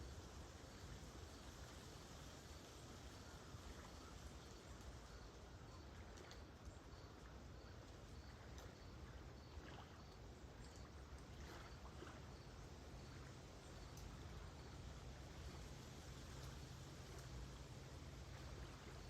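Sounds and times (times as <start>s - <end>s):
calm lake waves: 0.0s - 19.0s
cricket chirping: 0.0s - 19.0s
light clicks: 13.8s - 14.1s.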